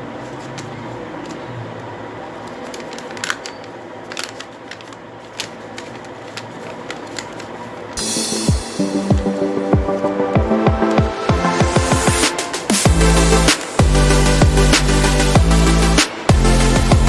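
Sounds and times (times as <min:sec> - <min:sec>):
paper crinkling: 0:00.0 - 0:08.0.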